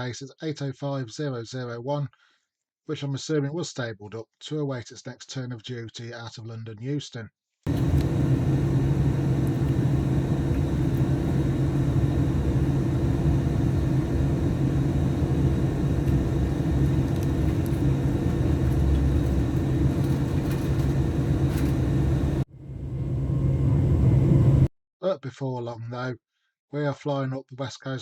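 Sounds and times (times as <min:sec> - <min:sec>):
electric train rumbling on board: 0:07.7 - 0:24.7.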